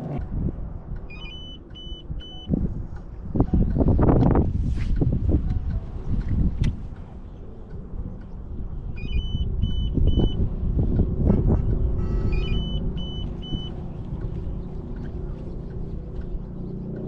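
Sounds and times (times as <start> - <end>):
wind rumbling on microphone: 0.0 - 17.0
short high electronic beeps: 1.1 - 2.5, 12.0 - 13.7.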